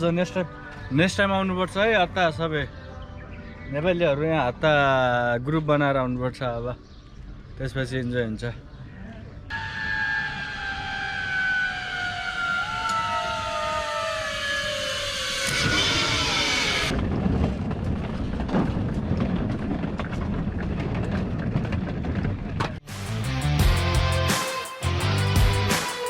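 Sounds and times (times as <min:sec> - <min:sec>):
vehicle engine falling in pitch: 0:09.5 - 0:17.0
rough rumbling noise: 0:09.9 - 0:23.3.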